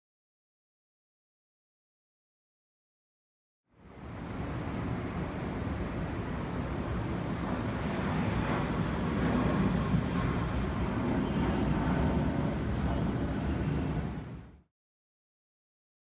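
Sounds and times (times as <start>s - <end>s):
distant jet engine rumble: 3.8s - 14.6s.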